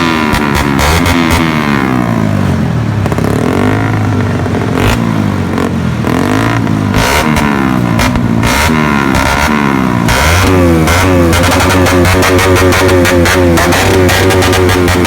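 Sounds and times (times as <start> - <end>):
engine revving loudly: 0.0 - 2.3, 5.6 - 15.0.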